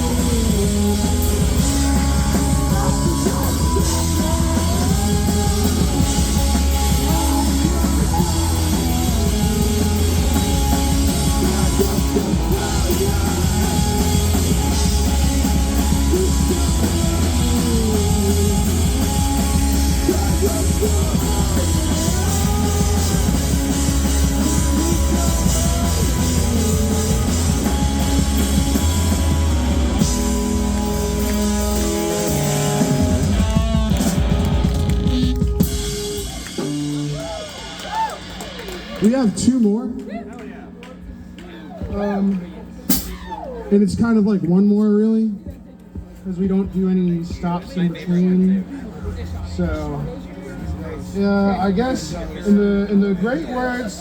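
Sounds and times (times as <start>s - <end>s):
live rock band playing: 0.0s - 41.3s, 42.9s - 44.1s.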